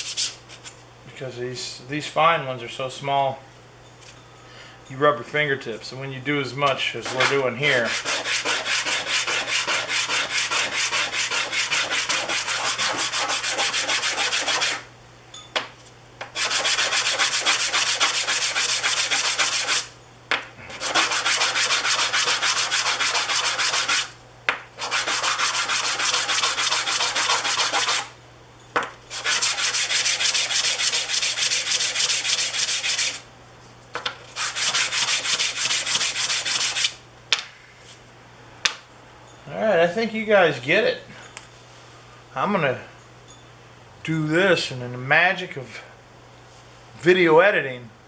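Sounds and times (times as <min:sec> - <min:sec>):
wood rubbing on sandpaper: 0:07.0 - 0:14.8, 0:16.4 - 0:19.9, 0:20.7 - 0:24.2, 0:24.8 - 0:28.1, 0:29.1 - 0:33.2, 0:34.4 - 0:37.0.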